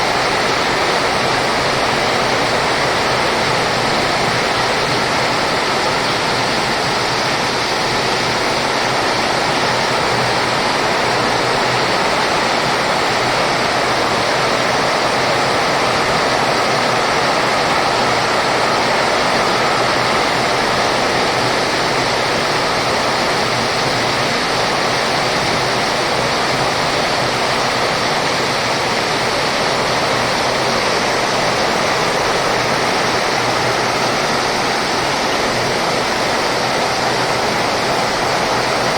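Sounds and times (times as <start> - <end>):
heavy rain in strong wind: 0.0 - 38.9.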